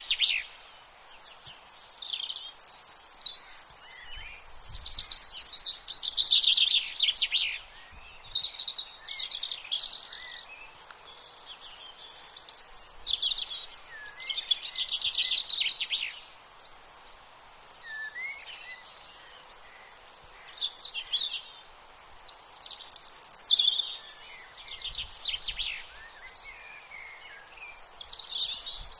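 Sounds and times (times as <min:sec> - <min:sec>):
songbird trills: 0:00.0 - 0:21.7, 0:22.3 - 0:28.9
background hiss: 0:00.0 - 0:28.9.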